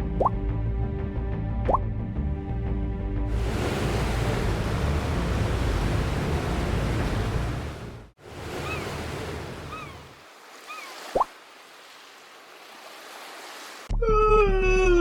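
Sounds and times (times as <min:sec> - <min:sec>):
ocean waves and surf: 0:03.3 - 0:13.9
short high chirping calls: 0:10.6 - 0:11.1.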